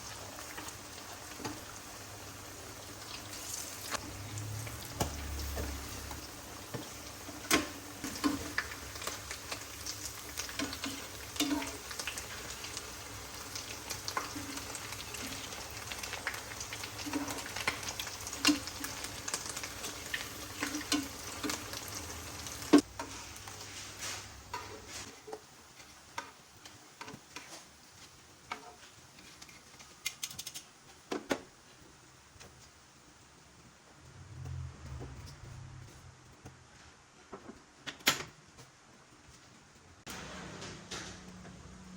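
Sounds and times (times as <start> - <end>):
food sizzling in oil: 0.0 - 29.8.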